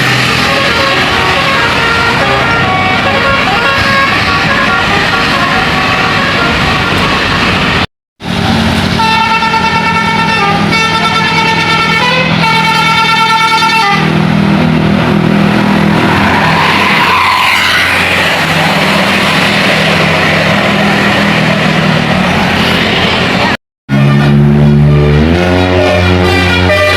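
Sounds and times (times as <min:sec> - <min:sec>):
musical multi-tone bus horn: 0:00.0 - 0:07.9, 0:08.8 - 0:14.3, 0:23.9 - 0:26.9
bus engine and road noise: 0:00.0 - 0:26.9.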